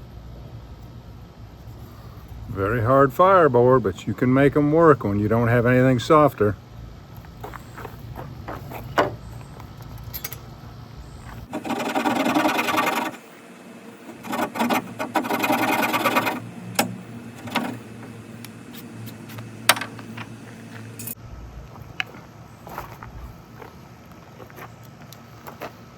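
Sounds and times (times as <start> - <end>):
wood grinding on wood: 11.3 - 21.1.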